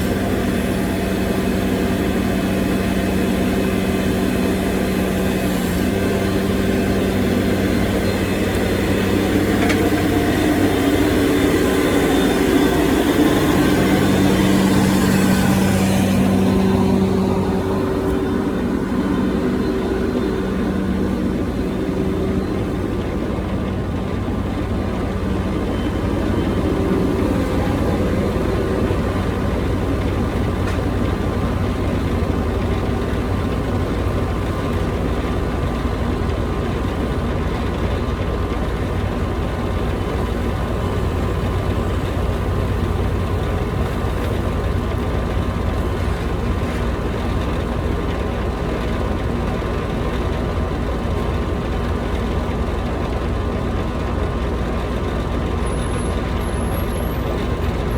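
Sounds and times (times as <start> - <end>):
heavy machine engine running: 0.0 - 57.9.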